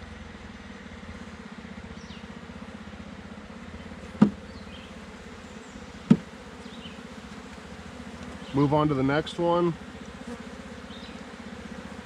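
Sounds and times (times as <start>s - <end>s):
bees buzzing: 0.0s - 12.0s
sharp knocks: 4.2s - 4.4s, 6.0s - 6.3s.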